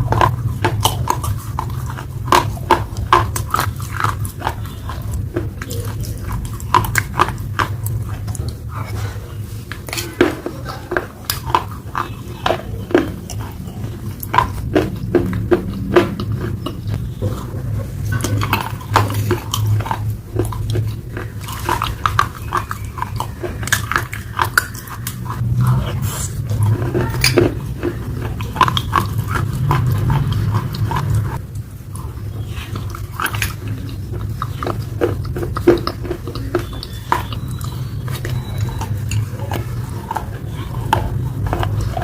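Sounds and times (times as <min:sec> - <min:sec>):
low steady hum: 0:00.0 - 0:42.0
wet chewing with mouth clicks: 0:00.0 - 0:42.0.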